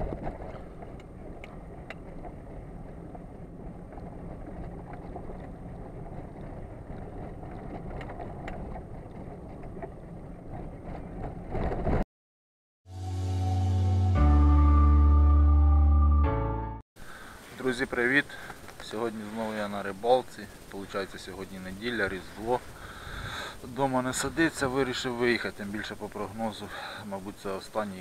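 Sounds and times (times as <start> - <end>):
boat on water: 0.0 - 12.0, 17.0 - 28.0
music: 12.9 - 16.8
faint clicks: 18.3 - 19.2.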